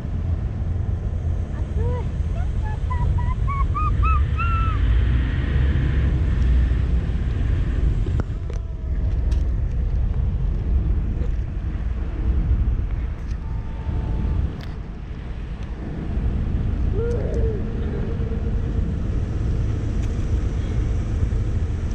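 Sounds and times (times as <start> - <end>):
ferry engine low rumble: 0.0 - 21.9
wind buffeting microphone: 0.0 - 21.9
sea noise: 1.6 - 6.0.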